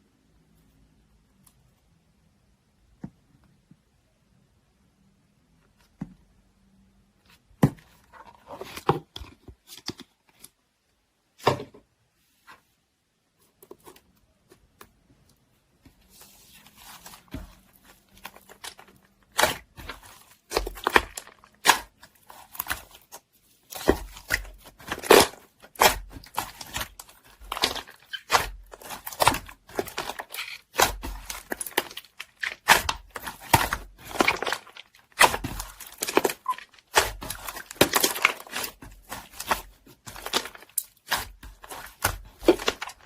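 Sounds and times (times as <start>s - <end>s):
rustling and crinkling: 12.1s - 43.0s.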